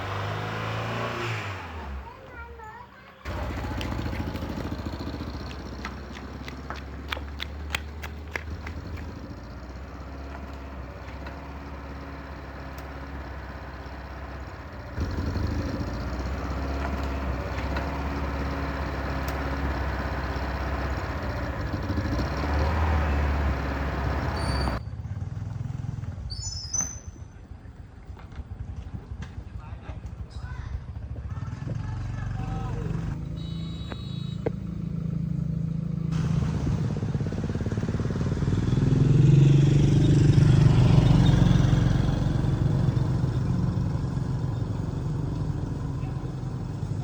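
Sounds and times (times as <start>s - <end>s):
pickup truck engine running: 3.3s - 24.8s, 27.6s - 39.2s.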